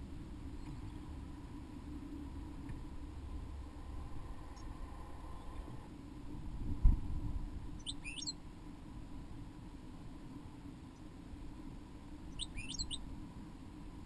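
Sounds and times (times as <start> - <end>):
small bird chirping: 7.8 - 8.4, 12.3 - 13.0.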